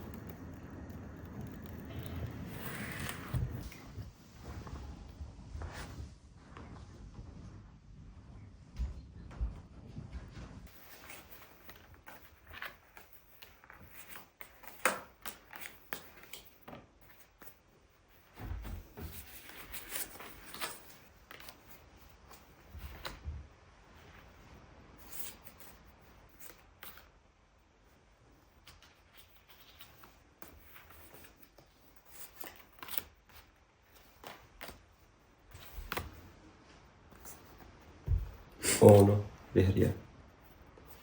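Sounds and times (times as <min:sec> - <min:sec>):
playing cards shuffled and dealt: 0:00.0 - 0:04.0, 0:10.7 - 0:23.2, 0:28.6 - 0:40.0
soft thumps: 0:38.0 - 0:38.6.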